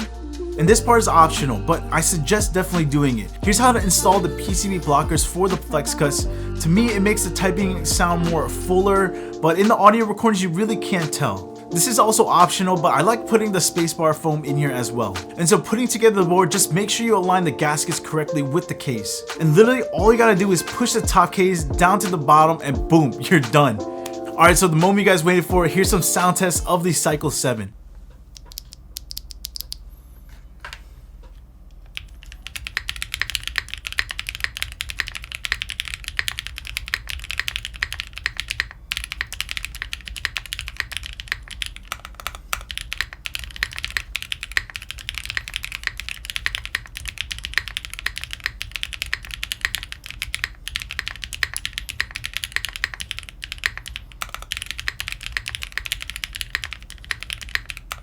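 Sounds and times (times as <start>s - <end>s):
mechanical keyboard typing: 28.4s - 29.8s, 31.9s - 58.0s.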